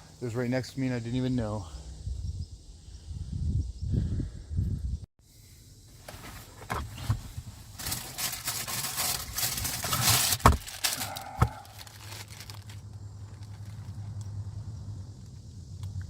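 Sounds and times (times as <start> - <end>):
vehicle engine hum: 5.4 - 16.0
rustling handling noise: 6.0 - 14.2.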